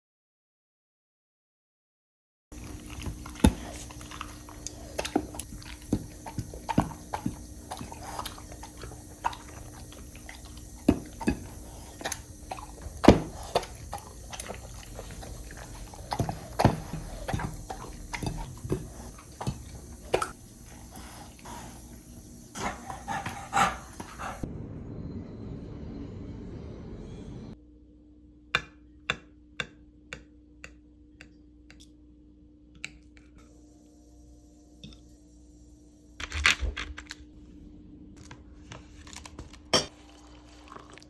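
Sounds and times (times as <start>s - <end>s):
dog chewing and licking: 2.5s - 24.4s.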